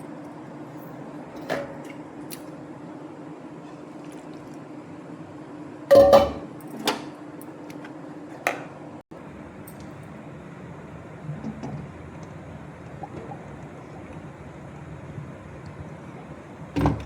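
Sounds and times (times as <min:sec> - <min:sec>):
kitchen utensils clattering: 0:05.9 - 0:07.0
steady low hum: 0:09.1 - 0:17.0.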